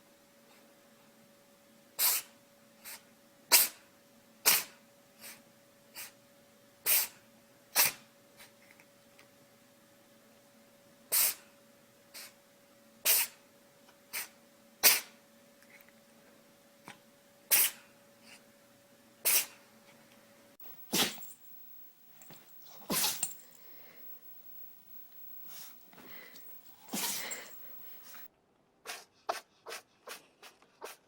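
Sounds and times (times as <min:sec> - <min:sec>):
pets sneezing: 0:14.1 - 0:15.1, 0:17.5 - 0:17.8, 0:19.2 - 0:19.6, 0:20.6 - 0:28.3.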